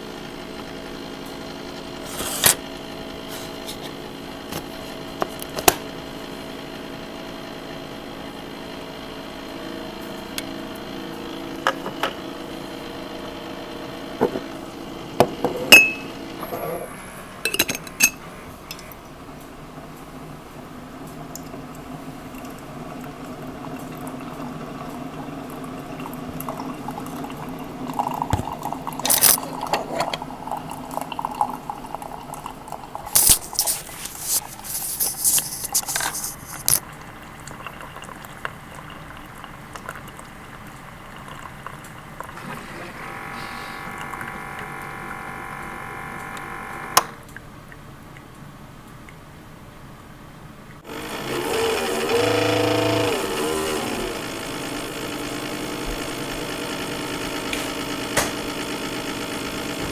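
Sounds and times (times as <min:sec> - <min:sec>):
coffee machine humming: 0:00.0 - 0:47.4, 0:50.8 - 0:59.9
liquid pouring: 0:22.3 - 0:47.4
steady pitched whine: 0:42.3 - 0:47.2.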